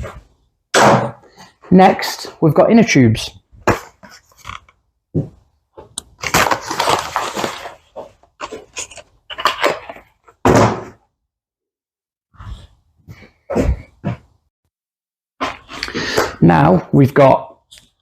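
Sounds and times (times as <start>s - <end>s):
packaging rustling and crinkling: 6.1s - 10.2s
object set down with thud: 10.4s - 11.0s.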